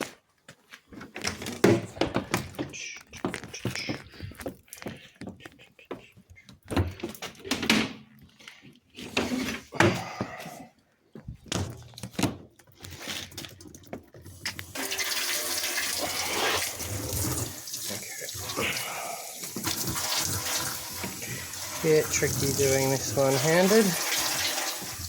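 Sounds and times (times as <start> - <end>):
water running: 14.4 - 25.0.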